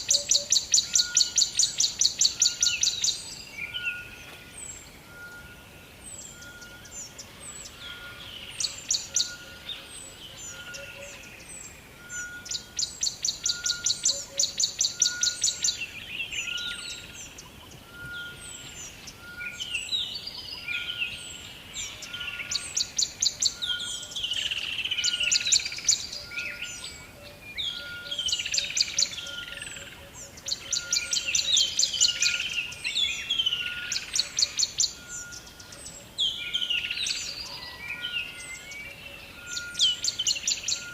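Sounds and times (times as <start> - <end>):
background hiss: 0.0 - 37.5
birds trilling: 0.0 - 40.9.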